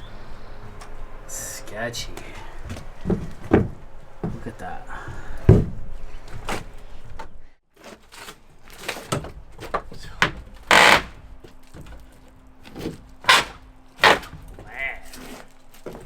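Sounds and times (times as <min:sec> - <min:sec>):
knocks and bangs on wood: 0:02.7 - 0:04.5, 0:05.1 - 0:06.7.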